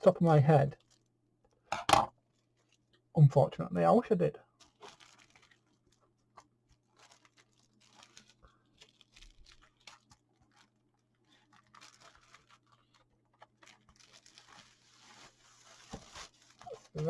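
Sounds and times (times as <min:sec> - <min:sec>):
plastic wrap crinkling and tearing: 0:00.8 - 0:01.1, 0:02.4 - 0:03.0, 0:04.5 - 0:17.0.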